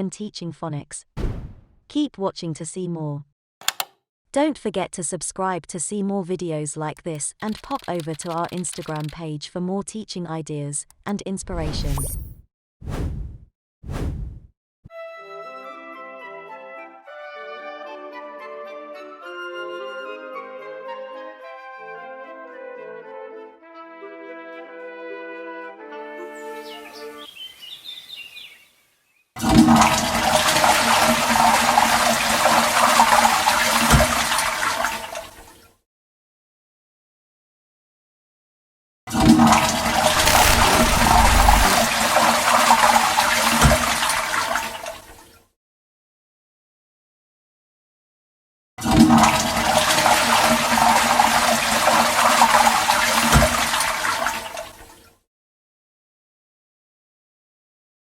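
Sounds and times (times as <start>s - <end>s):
faint bird chirps: 26.9s - 29.3s
toilet flushing: 29.4s - 35.4s, 39.1s - 45.1s, 48.8s - 54.8s
water rushing: 39.7s - 44.9s.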